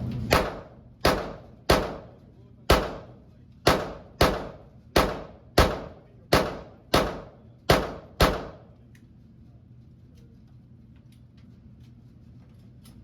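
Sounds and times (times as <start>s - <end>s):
pistol shots: 0.3s - 8.7s.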